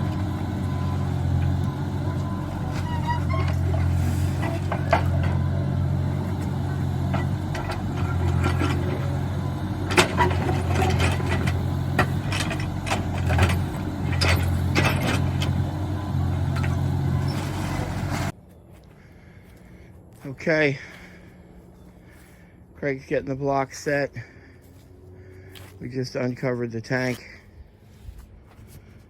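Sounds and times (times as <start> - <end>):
heavy equipment engine running: 0.0 - 18.4
metallic clanks and knocks: 1.2 - 15.8.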